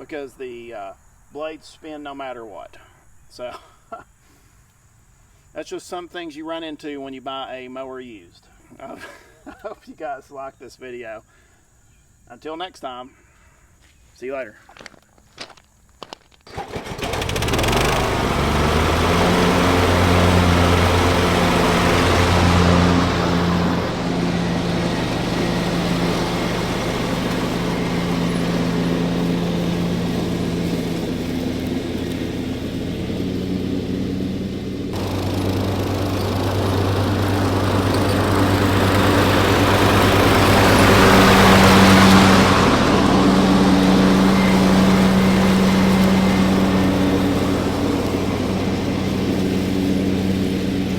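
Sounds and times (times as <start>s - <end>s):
riding lawn mower engine running: 14.8s - 50.9s.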